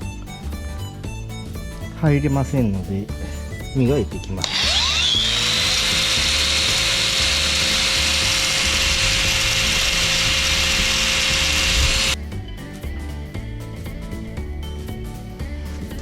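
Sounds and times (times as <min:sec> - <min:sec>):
quiet background music: 0:00.0 - 0:16.0
power tool polishing steel: 0:04.4 - 0:12.2.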